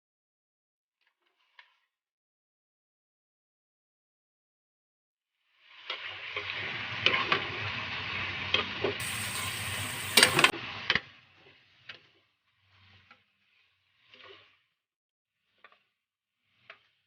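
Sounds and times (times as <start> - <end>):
food sizzling in a frying pan: 6.0 - 10.8.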